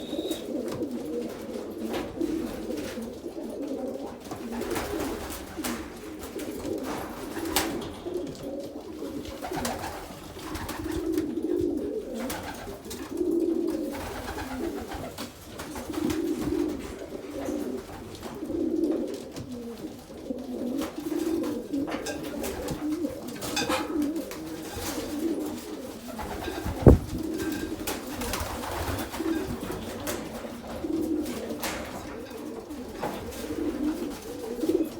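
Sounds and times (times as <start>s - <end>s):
pigeons cooing: 0.0s - 34.9s.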